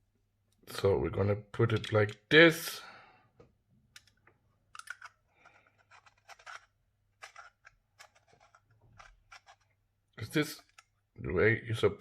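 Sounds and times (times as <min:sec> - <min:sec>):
small metal and glass parts clicking: 0:03.9 - 0:09.6.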